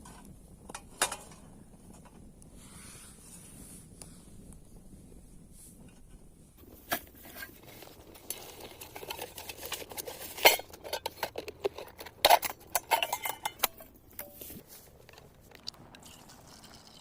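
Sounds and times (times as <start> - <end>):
metal cookware clinking: 8.2 - 14.5.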